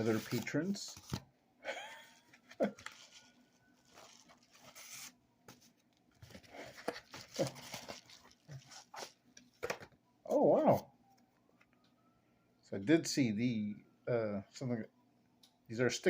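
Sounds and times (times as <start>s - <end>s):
paper rustling and crinkling: 0.0s - 1.2s, 2.3s - 9.8s.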